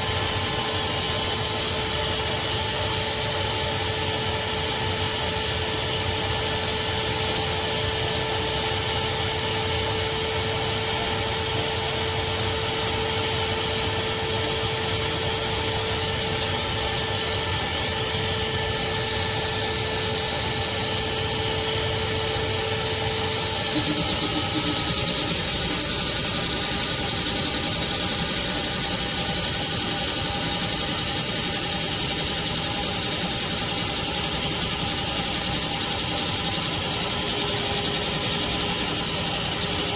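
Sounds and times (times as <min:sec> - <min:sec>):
shop vacuum running: 0:00.0 - 0:39.9.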